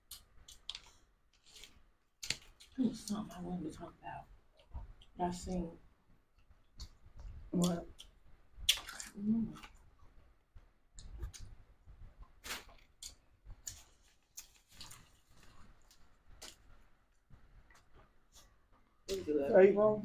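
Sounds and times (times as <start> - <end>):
mouth clicks and smacks eating: 0.1 - 2.8, 6.4 - 10.2, 10.9 - 16.8.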